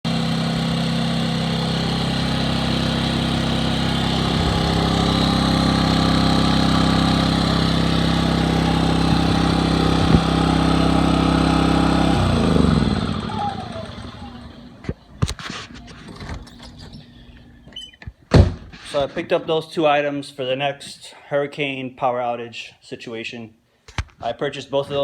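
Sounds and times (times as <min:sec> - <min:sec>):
portable generator running: 0:00.1 - 0:16.5.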